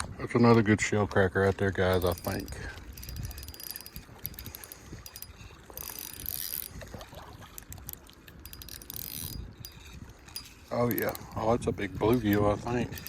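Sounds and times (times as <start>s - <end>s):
spinning reel gears clicking: 1.9s - 6.7s, 8.4s - 11.2s, 12.0s - 13.0s.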